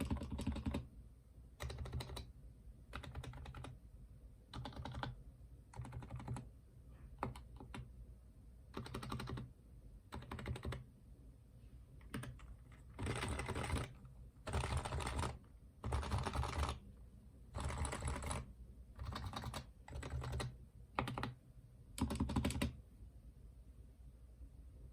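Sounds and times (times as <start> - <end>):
keyboard typing: 0.0 - 0.9, 1.6 - 2.3, 2.9 - 3.8, 4.5 - 6.5, 7.2 - 7.9, 8.7 - 9.5, 10.1 - 10.9, 12.0 - 16.8, 17.5 - 21.4, 22.0 - 22.8.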